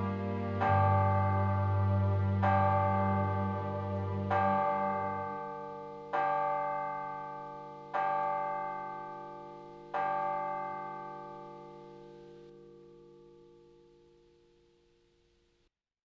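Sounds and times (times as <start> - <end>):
bell ringing: 0.0 - 12.5.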